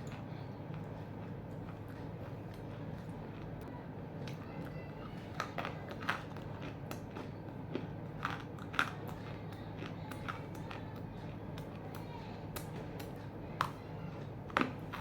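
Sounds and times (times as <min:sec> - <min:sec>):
chewing crunches: 0:05.3 - 0:15.0.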